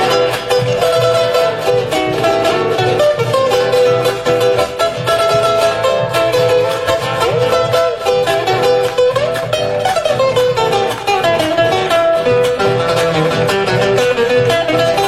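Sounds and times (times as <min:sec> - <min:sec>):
instrumental band music: 0:00.0 - 0:15.0
plucked guitar strings: 0:00.0 - 0:15.0.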